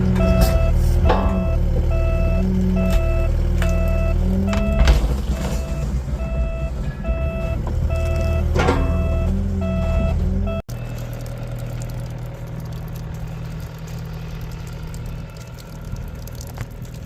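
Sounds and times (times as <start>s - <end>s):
diesel engine running: 0.0s - 17.0s
excavator travel alarm beeps: 0.2s - 10.6s.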